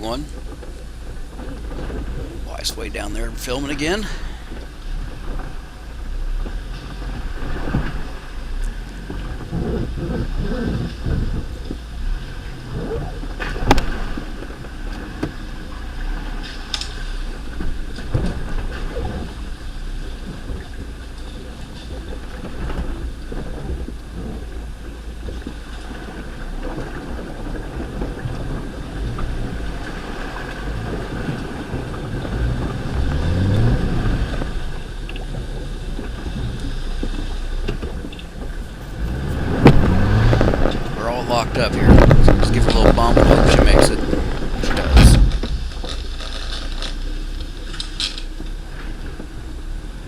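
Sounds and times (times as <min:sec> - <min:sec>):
vehicle engine running low speed: 0:00.0 - 0:50.0
knocks and clunks from rocks: 0:41.8 - 0:48.3.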